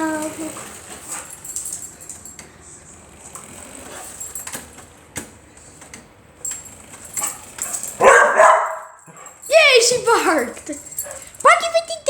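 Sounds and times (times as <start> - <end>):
dog moving clicks and knocks: 0.0 - 2.6, 3.2 - 8.2.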